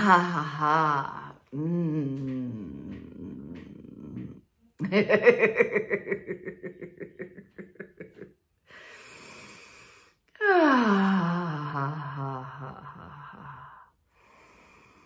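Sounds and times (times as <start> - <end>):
person laughing: 4.8 - 8.4.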